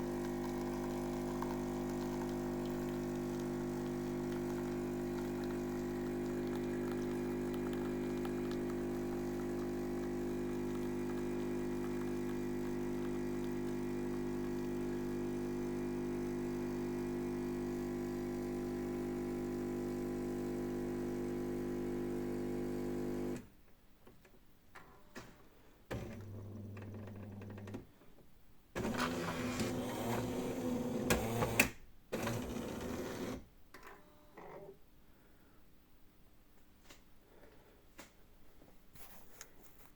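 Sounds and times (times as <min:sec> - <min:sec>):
coffee machine humming: 0:00.0 - 0:23.4, 0:25.9 - 0:27.7, 0:28.8 - 0:33.4.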